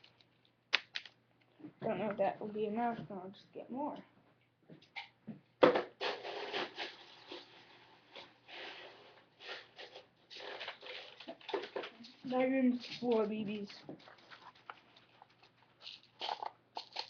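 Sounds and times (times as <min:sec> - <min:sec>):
rustling and rattling handling: 0:10.3 - 0:17.0.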